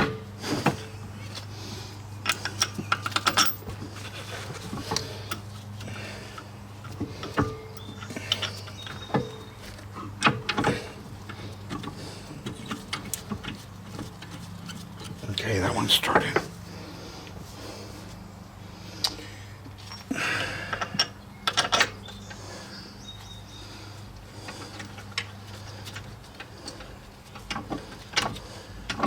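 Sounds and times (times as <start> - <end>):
steady low hum: 0.0 - 29.0
metallic clicks of brake parts: 2.2 - 15.2, 24.1 - 29.0.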